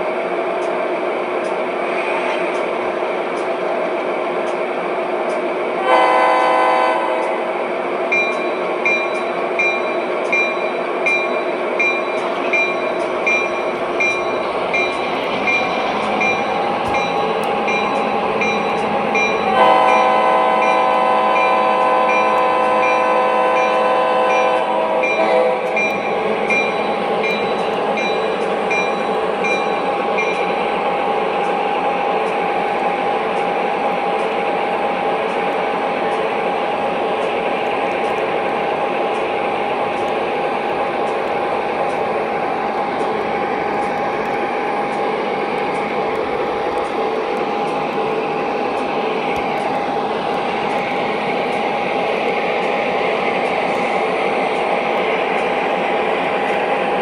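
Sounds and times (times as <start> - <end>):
model locomotive engine hum: 0.0 - 57.0.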